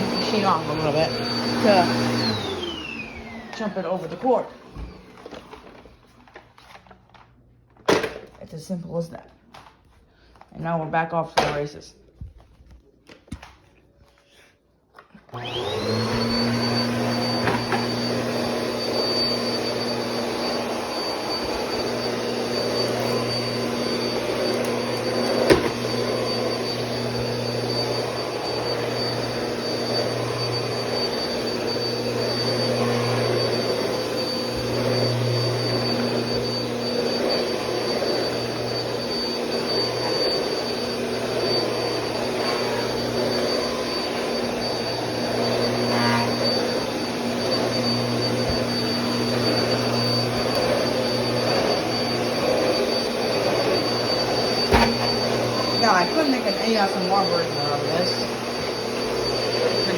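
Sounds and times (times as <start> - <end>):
vacuum cleaner motor whine: 0.0 - 7.3, 15.0 - 59.9.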